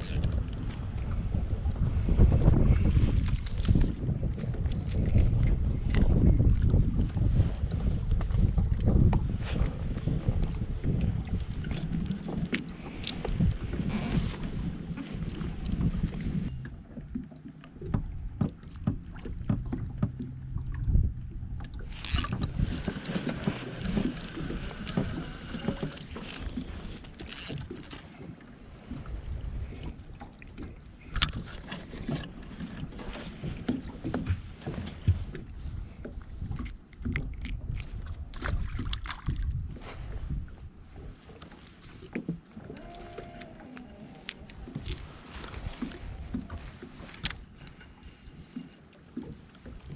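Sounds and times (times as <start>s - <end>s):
wind on microphone: 0.0s - 17.1s, 17.8s - 49.9s
water lapping at boat hull: 0.0s - 49.9s
gear knocking in boat: 10.0s - 28.3s, 30.6s - 36.4s.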